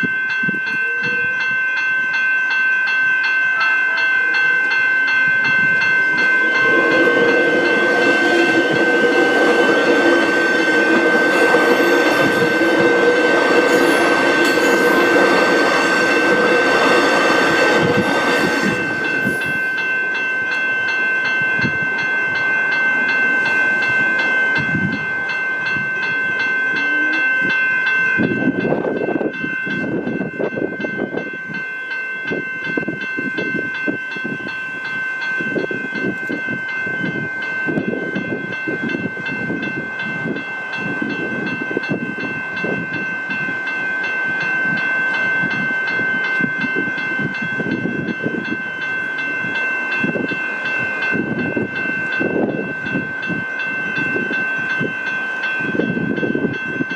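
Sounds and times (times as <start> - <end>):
level crossing warning bell ringing: 0.0 - 56.9
train wheels clattering on rails: 6.1 - 19.9.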